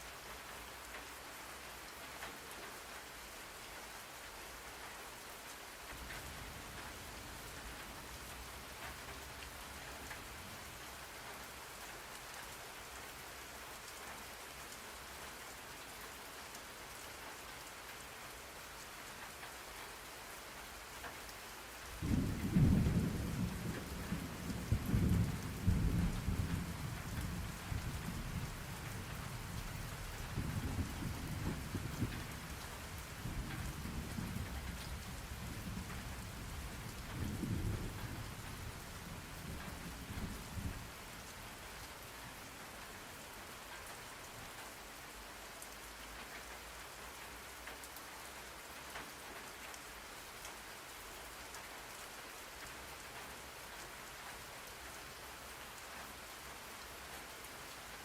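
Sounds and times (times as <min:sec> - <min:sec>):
rain hissing: 0:21.9 - 0:47.5
thunder rumbling: 0:22.0 - 0:28.5, 0:30.2 - 0:32.6, 0:33.2 - 0:41.0.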